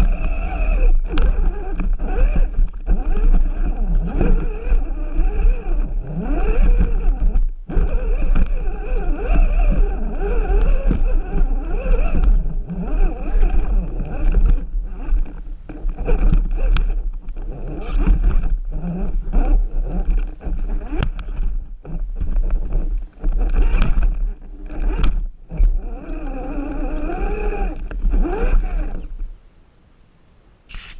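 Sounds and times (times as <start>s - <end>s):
electric motor and gears whining: 0.0s - 29.3s, 30.7s - 30.9s.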